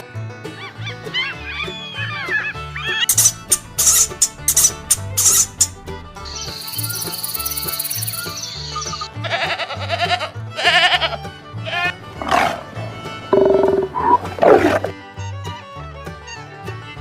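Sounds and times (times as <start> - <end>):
music with steady bass line: 2.6 - 9.4.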